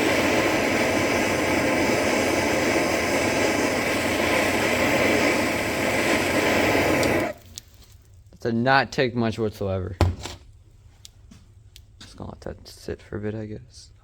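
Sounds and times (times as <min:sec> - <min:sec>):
blowtorch flame hissing: 0:00.0 - 0:07.5.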